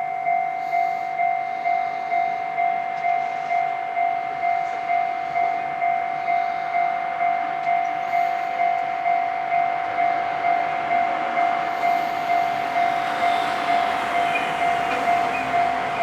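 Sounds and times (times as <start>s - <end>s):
level-crossing warning bell: 0.0s - 16.0s
rushing noise: 9.9s - 16.0s.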